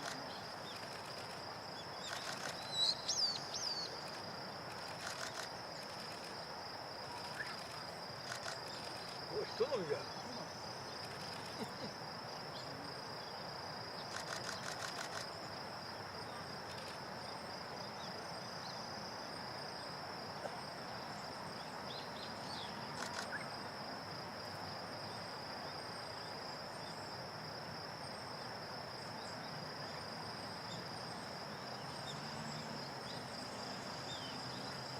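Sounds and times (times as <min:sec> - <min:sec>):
low background hiss: 0:00.0 - 0:34.9.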